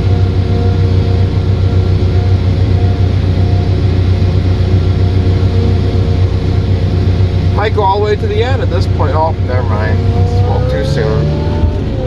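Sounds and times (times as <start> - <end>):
tractor engine droning: 0.0 - 12.0.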